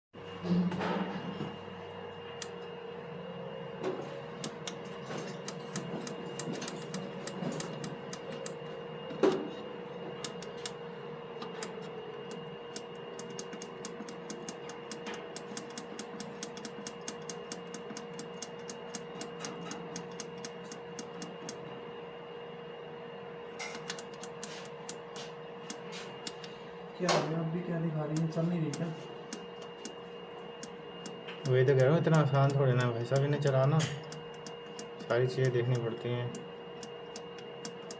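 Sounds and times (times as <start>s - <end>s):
electrical hum: 0.2s - 37.9s
lift equipment clicking: 12.3s - 21.6s, 23.7s - 25.0s.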